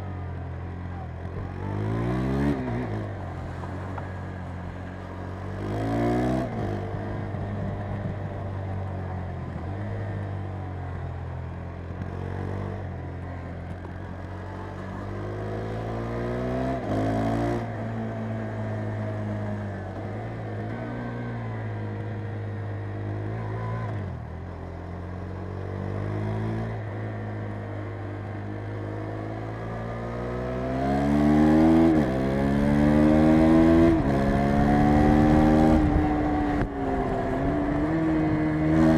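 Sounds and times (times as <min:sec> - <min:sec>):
motorcycle engine revving: 0:28.6 - 0:38.9.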